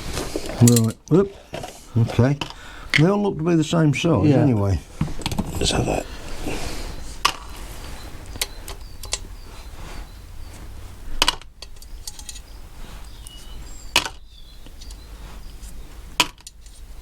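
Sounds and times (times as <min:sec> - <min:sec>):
steel parts clinking on metal: 0:00.6 - 0:01.0, 0:11.6 - 0:12.6.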